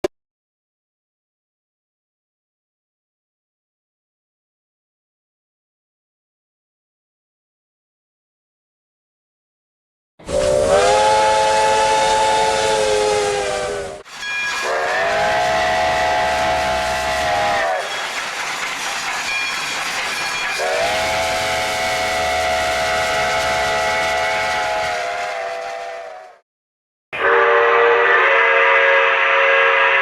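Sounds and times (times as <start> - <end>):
train chime whistle: 10.2 - 18.4, 19.0 - 26.4, 27.2 - 30.0
steam hissing: 10.2 - 26.4.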